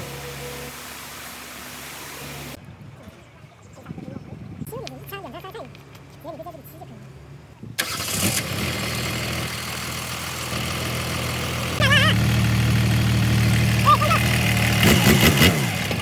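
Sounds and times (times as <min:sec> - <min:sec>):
engine starting and running: 0:07.8 - 0:16.0.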